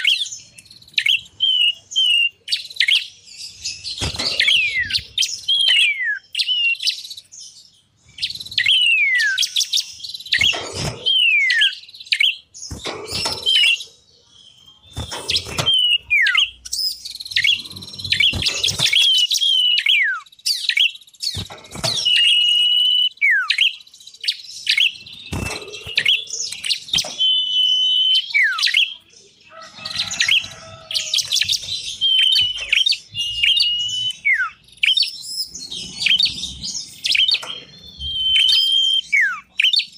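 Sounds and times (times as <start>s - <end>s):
songbirds calling: 0.0s - 39.9s
falling bird whistles: 4.0s - 7.0s, 14.9s - 23.8s, 30.1s - 36.3s, 37.0s - 39.9s.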